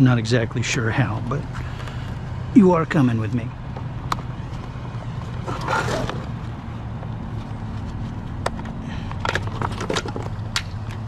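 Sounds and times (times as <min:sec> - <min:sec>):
scrap scraping rustle: 0:05.5 - 0:06.4.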